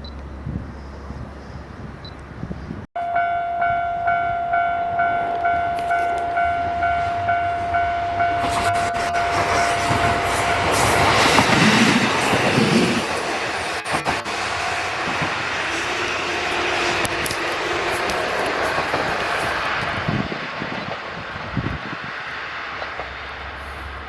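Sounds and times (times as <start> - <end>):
level-crossing warning bell: 3.0 - 11.8
train passing: 3.0 - 24.0
train wheel clicks: 8.5 - 20.0.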